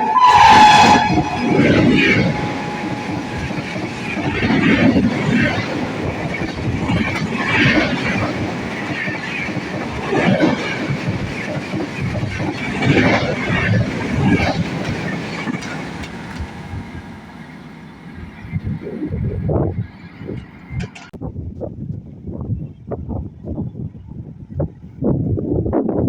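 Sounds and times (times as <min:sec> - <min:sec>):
train wheels clattering over rails: 0:00.0 - 0:18.9, 0:19.8 - 0:21.2
train rumble: 0:00.0 - 0:26.0.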